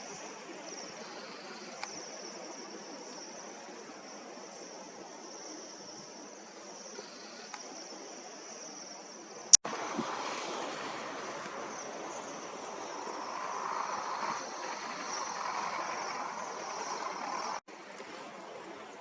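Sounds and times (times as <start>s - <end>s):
gusty wind rushing: 9.7s - 17.7s.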